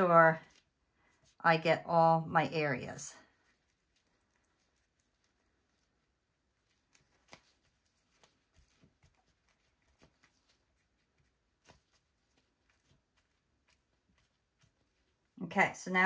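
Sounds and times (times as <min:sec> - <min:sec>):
gloved hands handling glass: 0:03.3 - 0:15.3.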